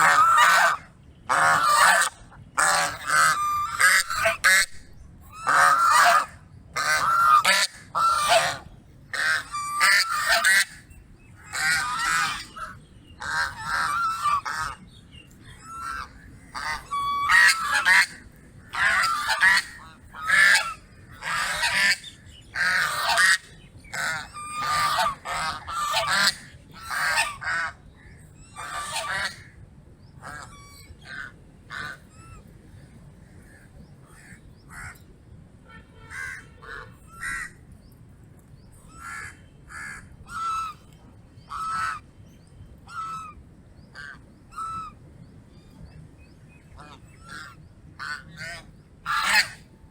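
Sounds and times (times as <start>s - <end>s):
goose honking: 0.0s - 14.8s, 15.6s - 27.8s, 28.5s - 29.5s, 36.0s - 37.5s, 38.9s - 40.9s, 41.5s - 42.0s, 42.9s - 43.4s, 46.8s - 49.6s.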